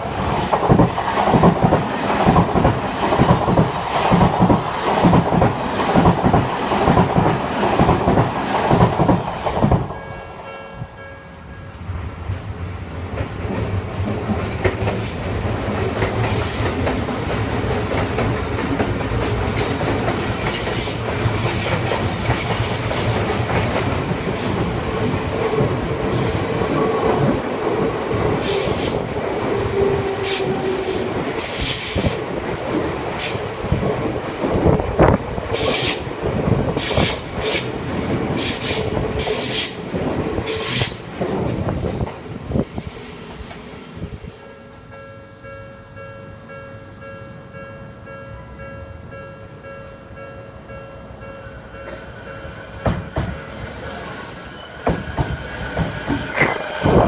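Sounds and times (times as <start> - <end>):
train wheels rumbling on rail: 0.0 - 44.5, 50.6 - 57.0
wheels clacking over rail joints: 0.2 - 10.0, 51.8 - 57.0.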